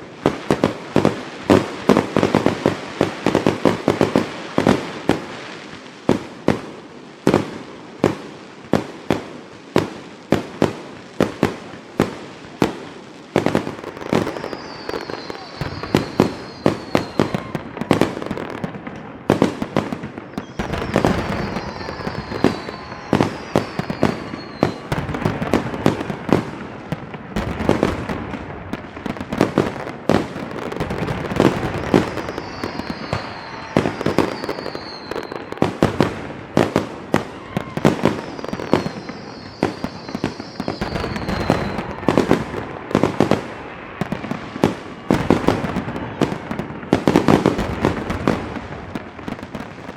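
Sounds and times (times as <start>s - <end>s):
fireworks bangs and crackling: 0.0s - 49.9s
high whistles falling in pitch: 13.9s - 18.6s, 20.3s - 26.1s, 30.6s - 35.9s, 37.2s - 43.0s.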